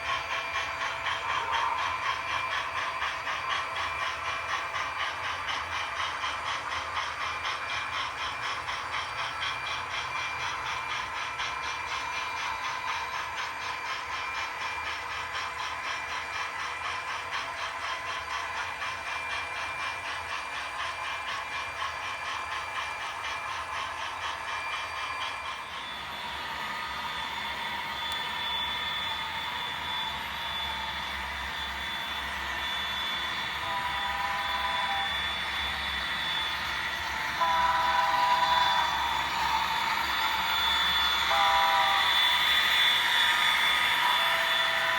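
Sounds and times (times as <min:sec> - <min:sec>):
model train running: 0:00.0 - 0:44.9.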